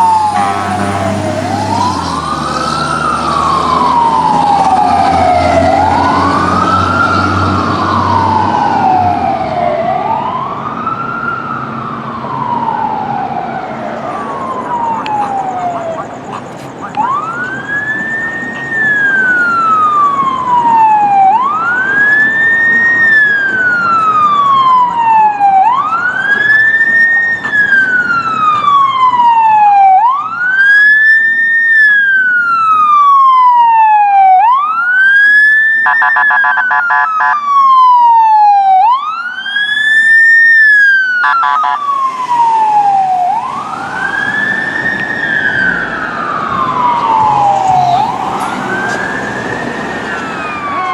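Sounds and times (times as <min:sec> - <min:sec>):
rapid pulsing siren tone: 0:00.0 - 0:16.3, 0:35.6 - 0:50.9
emergency vehicle siren wailing: 0:00.0 - 0:50.9.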